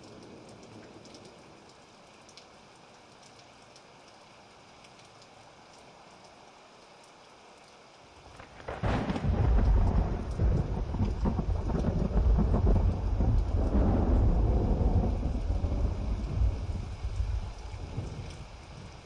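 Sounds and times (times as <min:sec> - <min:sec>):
rain hiss: 0:00.0 - 0:19.0
thunder rumbling: 0:08.3 - 0:19.0.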